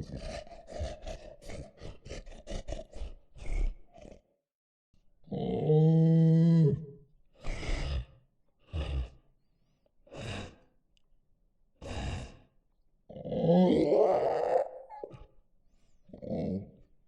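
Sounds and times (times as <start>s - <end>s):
monster growl: 0.0s - 4.3s, 13.1s - 15.3s
deep monster moan: 5.3s - 7.0s, 13.1s - 15.3s
heavy breathy sighs: 7.4s - 9.2s, 10.0s - 10.8s, 11.8s - 12.6s.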